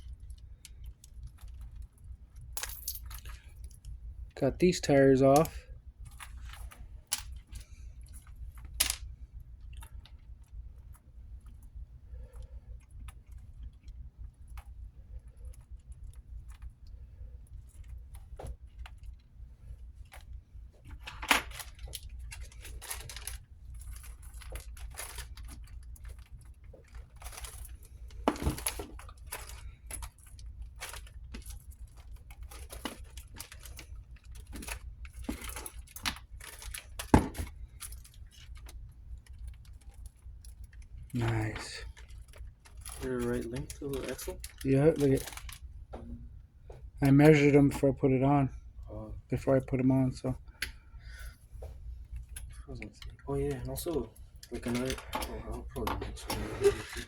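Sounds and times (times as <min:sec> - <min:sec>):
steady low hum: 0:00.0 - 0:57.0
small metal parts clicking: 0:00.1 - 0:04.0.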